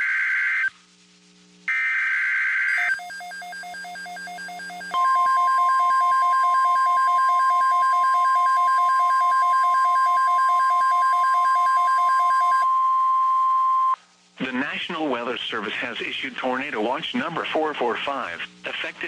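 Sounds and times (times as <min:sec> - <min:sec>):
steady high-pitched alarm tone: 0:01.7 - 0:12.7.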